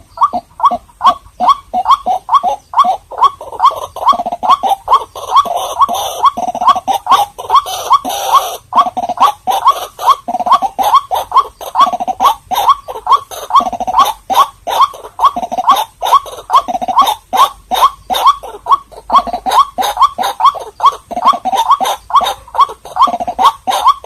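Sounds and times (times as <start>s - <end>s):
waterhen calling: 0.0s - 24.0s.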